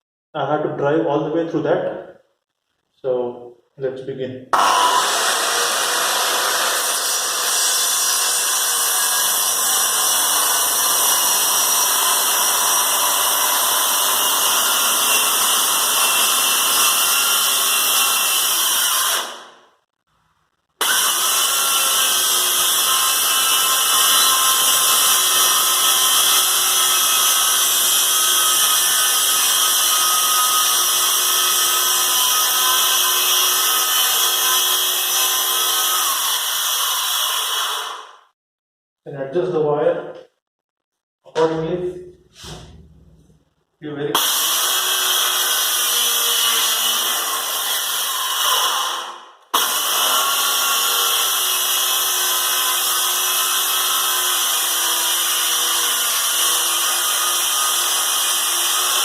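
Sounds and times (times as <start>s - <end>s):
circular saw cutting board: 4.6s - 19.5s.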